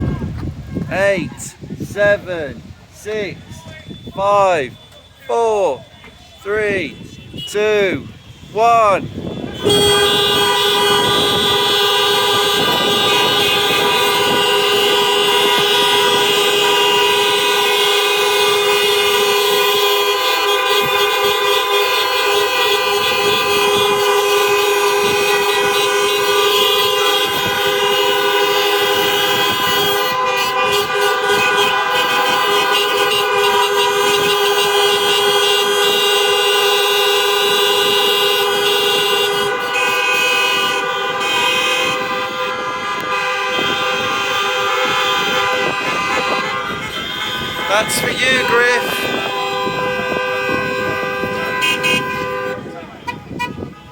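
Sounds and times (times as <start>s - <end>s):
many car horns honking: 3.5s - 53.9s.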